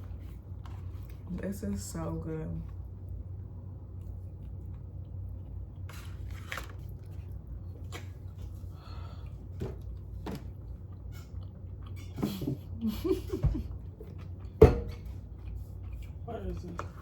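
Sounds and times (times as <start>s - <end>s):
steady low hum: 0.0s - 17.0s
crunching and mouth sounds: 2.7s - 12.8s
person chewing food: 2.7s - 12.9s, 13.6s - 17.0s.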